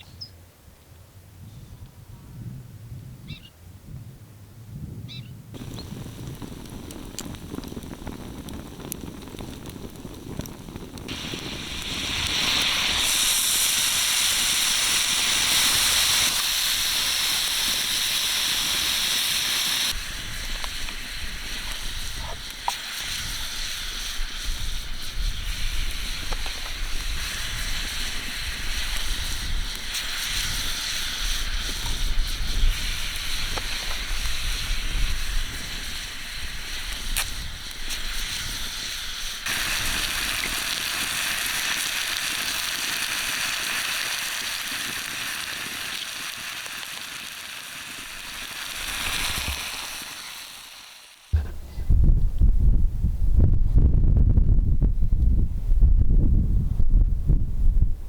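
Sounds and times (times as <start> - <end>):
wind hiss on microphone: 1.1 - 58.0
low gusting wind rumble: 1.2 - 40.2, 51.4 - 58.0.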